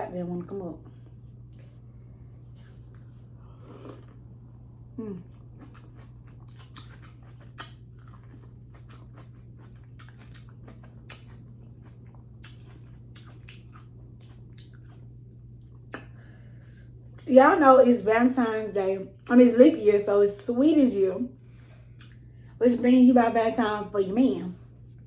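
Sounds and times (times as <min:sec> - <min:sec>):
steady low hum: 0:00.0 - 0:25.0
crunchy chewing of corn: 0:05.1 - 0:17.2.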